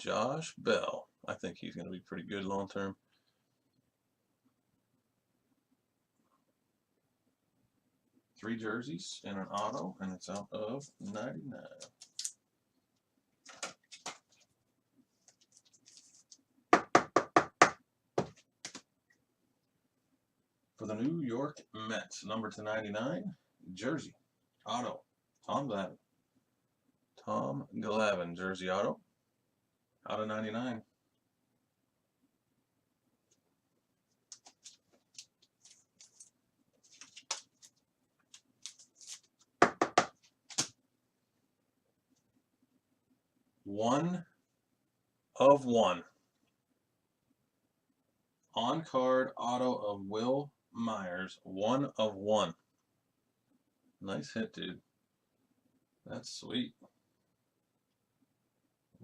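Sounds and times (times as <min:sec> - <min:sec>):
trading cards and plastic holders handled: 0:13.4 - 0:14.6, 0:15.2 - 0:16.4, 0:34.1 - 0:40.8
sharp knocks on hard surface: 0:16.8 - 0:18.4, 0:39.6 - 0:40.2
sharp knocks: 0:39.6 - 0:40.2.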